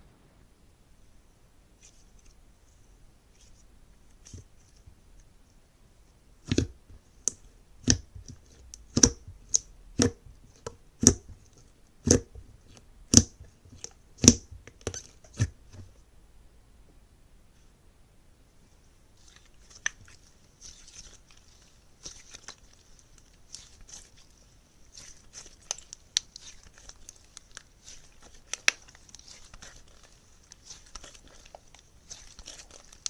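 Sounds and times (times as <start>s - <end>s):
slime crackling softly: 1.7s - 16.1s, 18.7s - 33.0s
slime popping: 6.4s - 11.4s, 19.2s - 33.0s.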